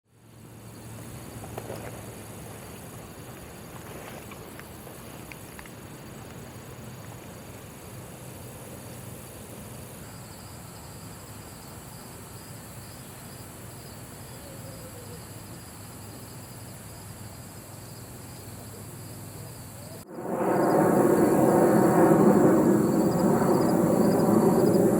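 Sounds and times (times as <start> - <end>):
high insect trill: 0.1 - 24.9
faint hooting bird call: 14.2 - 15.4.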